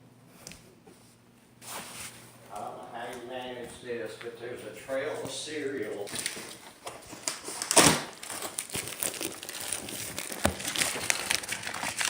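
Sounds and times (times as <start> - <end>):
cardboard packaging crinkling: 5.0 - 12.0.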